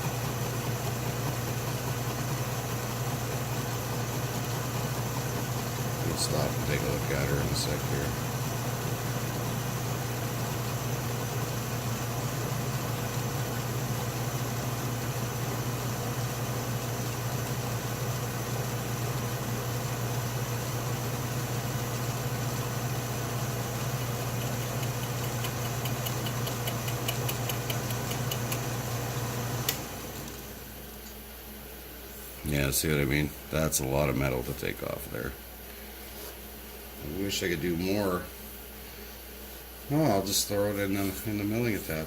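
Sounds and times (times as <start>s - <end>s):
metal lathe motor hum: 0.0s - 30.4s
faint fast ticking: 24.4s - 28.7s.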